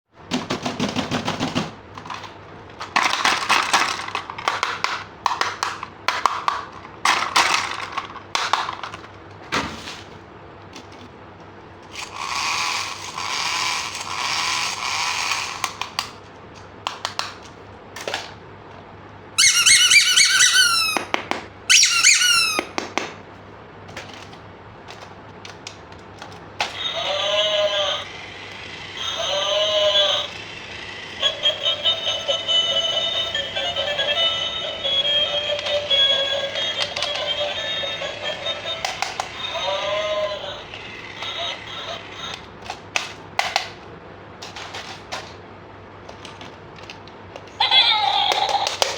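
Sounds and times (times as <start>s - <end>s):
plastic toy parts clicking: 0.4s - 9.2s, 38.7s - 39.5s, 46.1s - 47.6s, 48.3s - 48.9s
high falling chirps: 19.4s - 21.1s, 21.7s - 22.7s.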